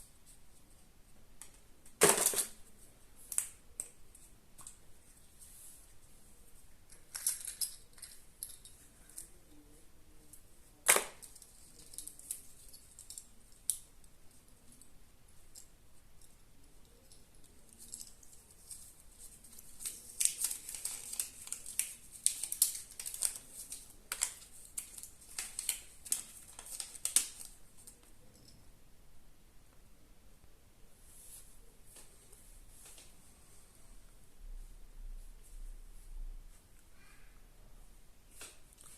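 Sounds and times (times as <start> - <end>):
foil wrapping crinkling: 19.3 - 27.6.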